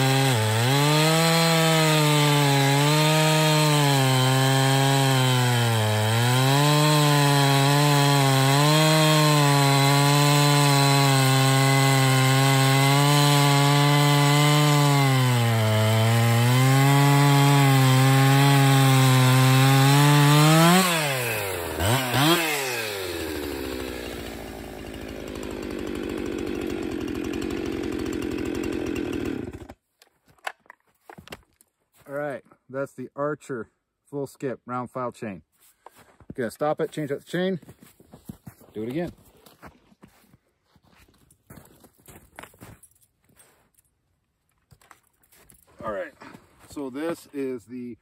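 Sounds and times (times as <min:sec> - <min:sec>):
chainsaw cutting wood: 0:00.0 - 0:29.8
chainsaw revving and idling: 0:00.0 - 0:29.8.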